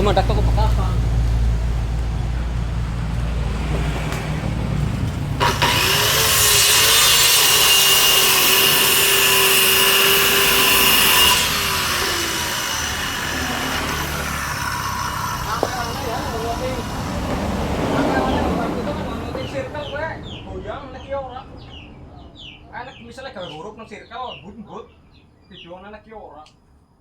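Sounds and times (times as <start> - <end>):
power tool cutting wood: 5.1 - 19.9.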